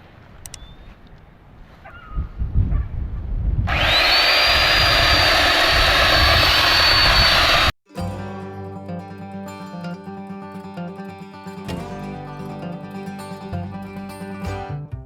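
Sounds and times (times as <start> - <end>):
electric chainsaw whining: 3.7 - 7.8.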